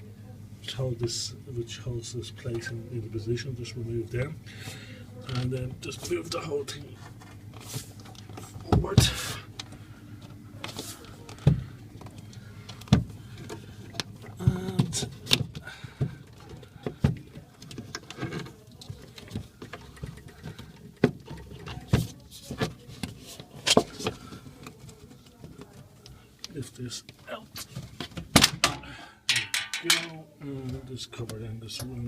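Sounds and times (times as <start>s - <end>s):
parts banging against metal cabinet: 28.2s - 30.2s
machine parts knocking and scraping: 28.4s - 30.1s.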